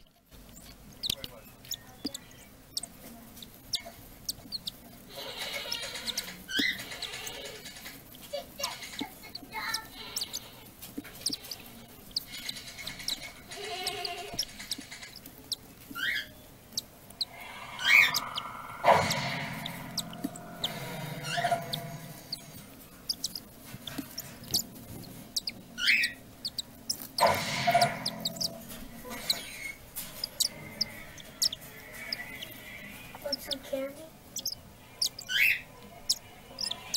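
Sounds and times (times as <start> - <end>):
chicks peeping: 0.0 - 36.9
low hum: 17.0 - 23.2.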